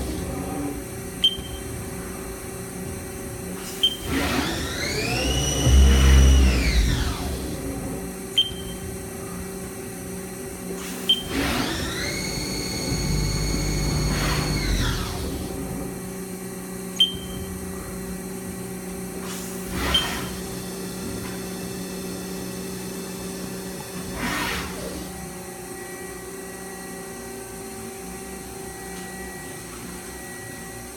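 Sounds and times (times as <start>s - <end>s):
lathe motor hum: 4.2s - 8.3s, 11.4s - 16.8s.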